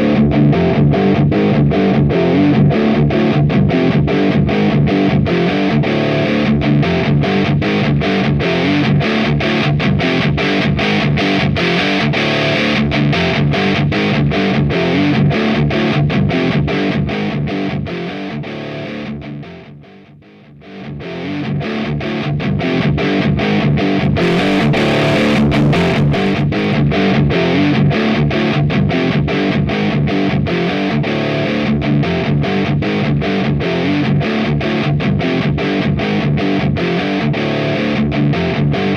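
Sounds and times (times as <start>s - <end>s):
distorted electric guitar riff: 24.0s - 27.3s.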